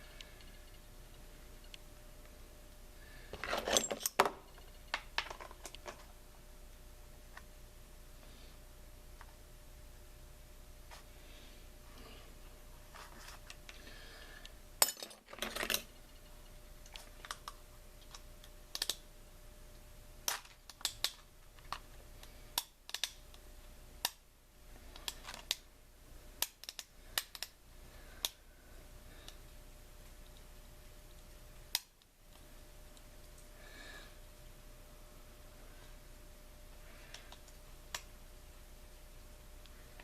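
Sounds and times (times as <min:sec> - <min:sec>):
clicks and taps of small parts: 0:16.9 - 0:19.0, 0:20.3 - 0:23.2, 0:26.4 - 0:27.6.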